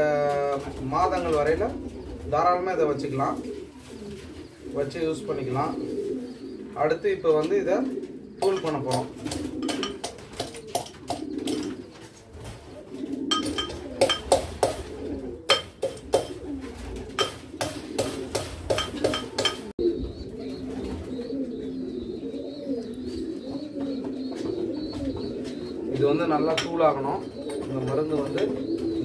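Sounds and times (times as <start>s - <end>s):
pigeons cooing: 0.0s - 29.0s
utensil pounding medicine: 8.4s - 11.6s, 15.5s - 16.4s, 17.2s - 19.7s.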